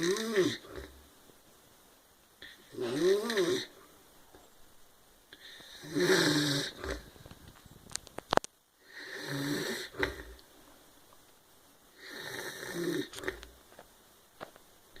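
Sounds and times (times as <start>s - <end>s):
man snoring: 0.0s - 1.0s, 2.7s - 3.7s, 5.6s - 7.1s, 8.8s - 10.4s, 12.0s - 13.4s.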